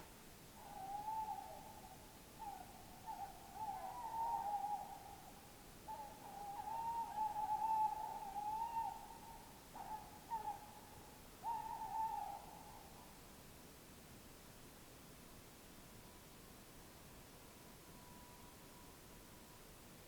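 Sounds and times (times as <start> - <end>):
faint steady hiss: 0.0 - 20.0
owl hooting: 0.6 - 5.3, 5.9 - 13.0.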